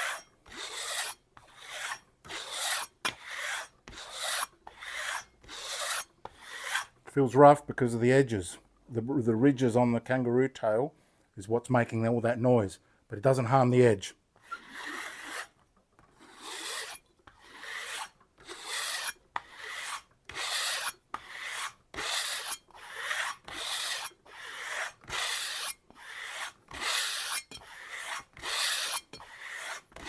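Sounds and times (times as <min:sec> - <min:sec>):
knife scraping on leather strop: 0:00.0 - 0:06.9, 0:14.4 - 0:15.5, 0:16.2 - 0:24.1, 0:24.7 - 0:30.0.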